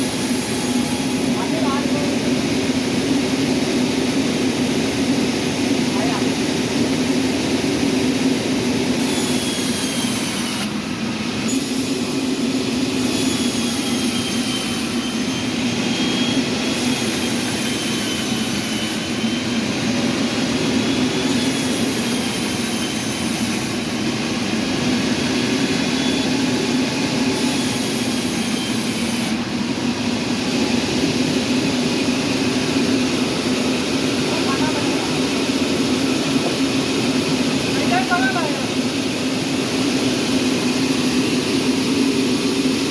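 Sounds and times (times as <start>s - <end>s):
sawmill machinery humming: 0.0s - 42.9s.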